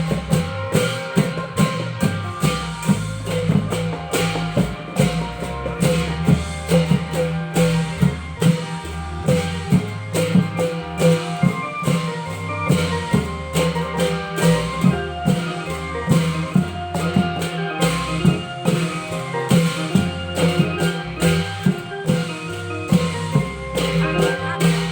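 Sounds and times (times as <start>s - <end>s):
long drums driving rhythm: 0.0s - 24.9s
sustained bass and melodic tones: 0.0s - 24.9s.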